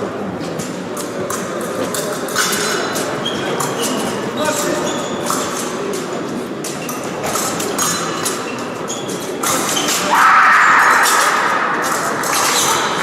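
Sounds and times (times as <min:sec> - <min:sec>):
fencing blades clicking: 0:11.0 - 0:13.0.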